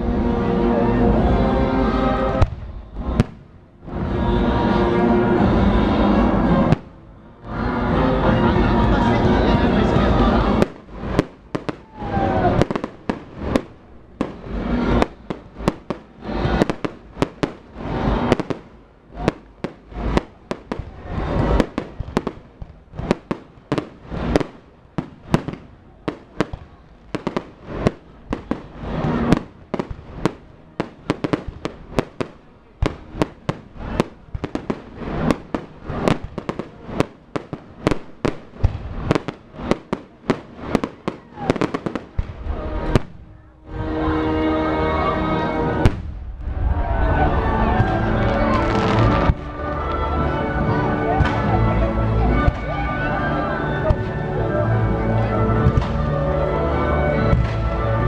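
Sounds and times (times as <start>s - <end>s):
fireworks bangs and cracks: 1.8s - 7.0s, 8.2s - 44.3s, 45.4s - 58.0s
low rumble: 42.2s - 58.0s.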